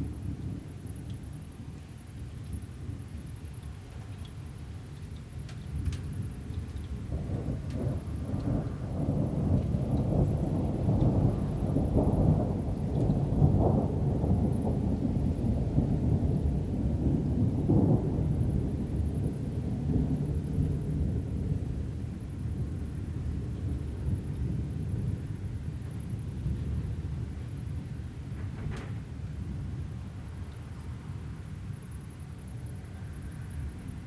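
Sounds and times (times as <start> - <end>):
rolling thunder rumble: 6.2 - 30.5.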